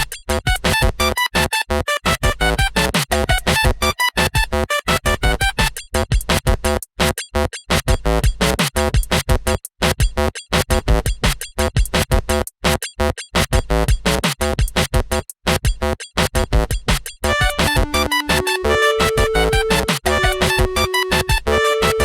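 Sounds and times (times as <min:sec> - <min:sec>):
upbeat electronic music: 0:17.3 - 0:22.0.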